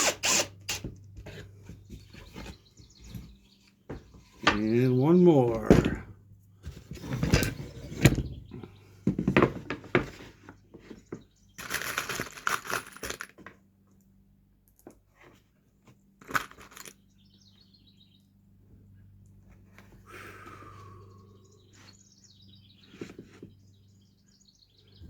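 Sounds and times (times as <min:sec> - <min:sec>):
bird chirps: 0:20.8 - 0:25.0.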